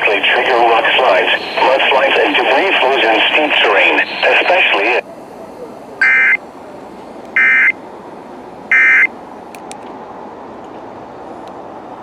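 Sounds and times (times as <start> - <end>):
receiver hiss: 0.0 - 7.8.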